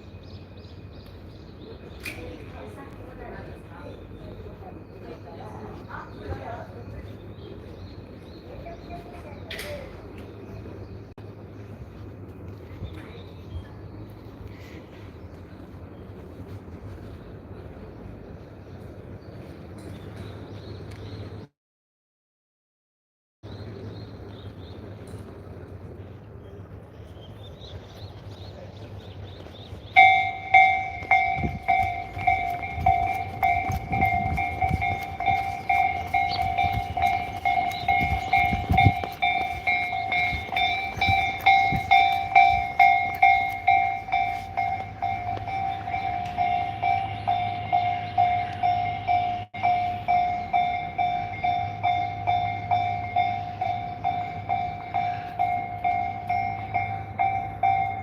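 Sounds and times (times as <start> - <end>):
level crossing warning bell: 29.9 - 58.0.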